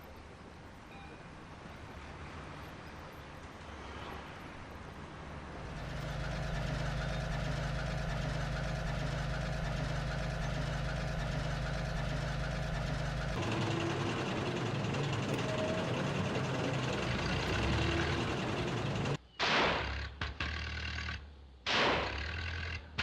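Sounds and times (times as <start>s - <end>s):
hissy engine: 3.4s - 19.2s
diesel engine idling: 5.3s - 19.2s.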